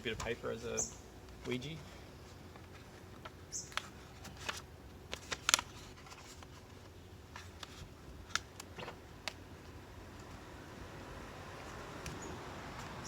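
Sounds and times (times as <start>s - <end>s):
hands tapping and scraping vinyl: 2.4s - 10.4s.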